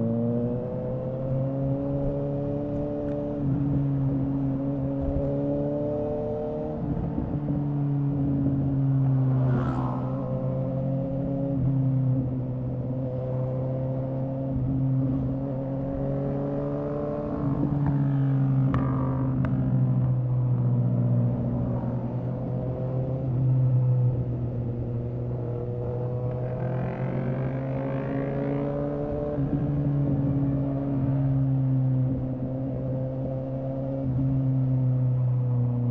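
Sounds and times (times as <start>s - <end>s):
motorcycle engine revving: 21.5s - 34.6s.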